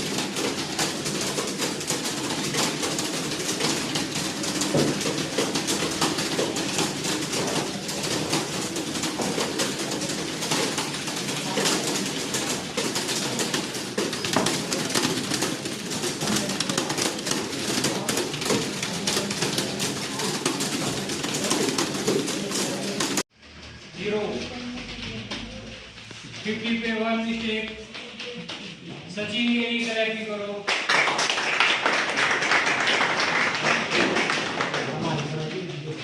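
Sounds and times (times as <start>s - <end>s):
clatter of many keyboards: 0.0s - 36.0s.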